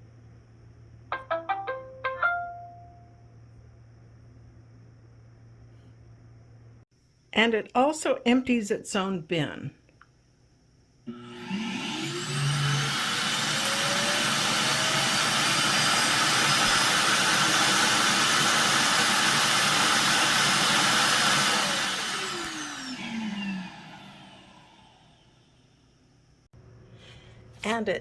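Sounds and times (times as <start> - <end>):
suction motor whining: 11.1 - 25.6.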